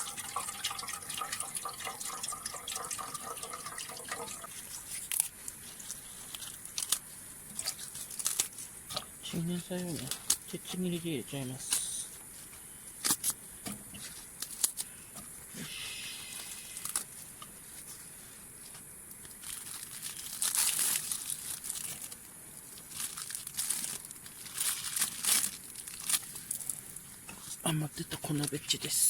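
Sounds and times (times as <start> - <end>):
leafy vegetable leaves tearing: 4.5 - 10.6, 15.6 - 17.8, 19.2 - 27.0.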